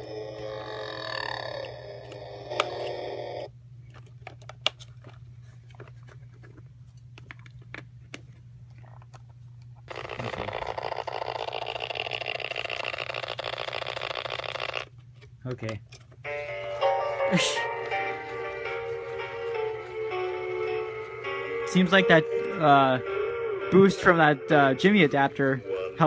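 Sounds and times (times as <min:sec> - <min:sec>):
tinny toy sound: 0:00.0 - 0:03.5, 0:09.9 - 0:14.8
steady hum: 0:00.0 - 0:26.0.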